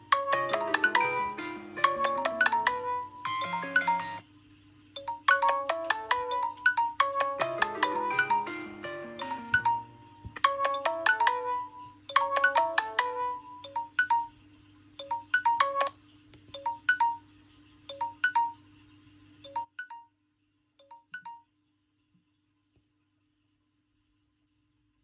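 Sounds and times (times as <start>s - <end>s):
smartphone ringtone melody: 0.0s - 4.2s, 5.0s - 14.3s, 15.0s - 16.0s, 16.6s - 17.2s, 17.9s - 18.6s, 19.5s - 20.1s.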